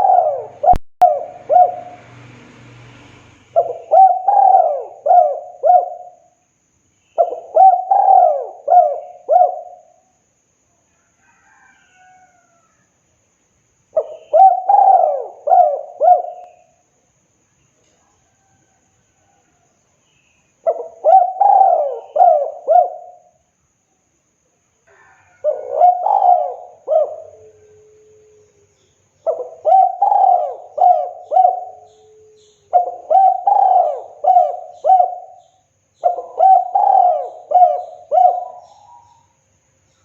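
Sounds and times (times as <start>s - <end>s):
dove cooing: 0.0s - 2.1s, 3.5s - 6.4s, 7.2s - 10.0s, 14.0s - 16.7s, 20.6s - 23.4s, 24.9s - 28.4s, 29.2s - 39.3s.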